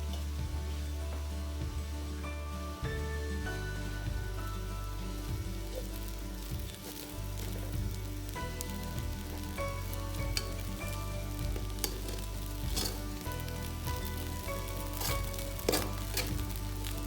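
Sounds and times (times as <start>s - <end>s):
food sizzling in a pan: 0.0s - 17.0s
utensil clicking against pan: 11.6s - 13.0s, 15.0s - 16.5s.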